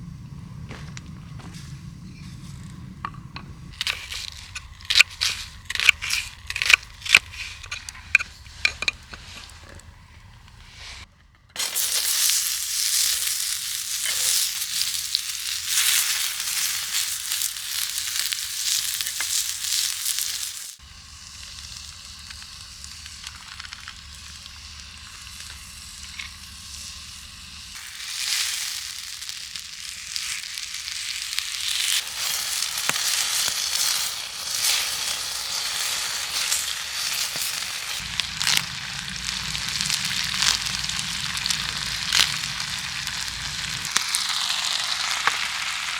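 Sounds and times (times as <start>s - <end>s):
food sizzling in a pan: 11.6s - 45.9s.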